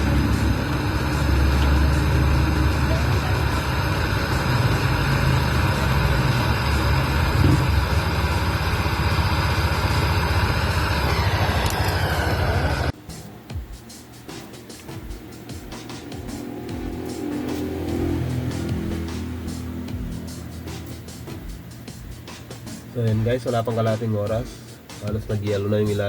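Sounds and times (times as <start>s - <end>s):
torch flame roaring: 0.0s - 13.0s.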